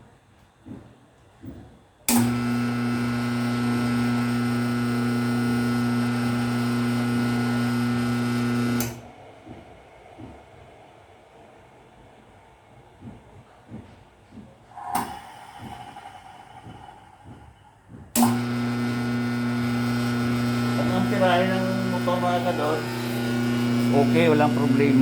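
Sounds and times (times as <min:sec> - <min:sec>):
electric motor humming: 0:02.1 - 0:09.0, 0:18.2 - 0:25.0.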